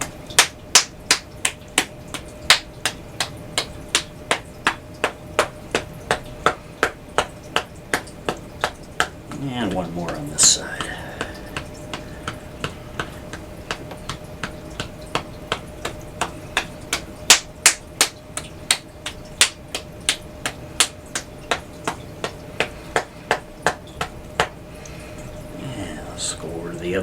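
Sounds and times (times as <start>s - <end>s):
hand tapping on body: 0.0s - 24.6s.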